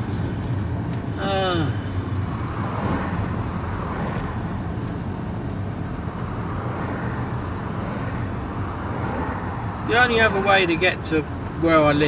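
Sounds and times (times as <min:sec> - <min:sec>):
van engine droning inside cab: 0:00.0 - 0:06.5.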